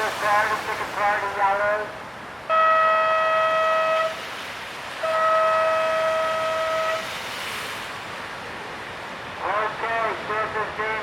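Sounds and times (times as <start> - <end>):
long horn blasts: 2.5 - 4.2, 5.0 - 7.1.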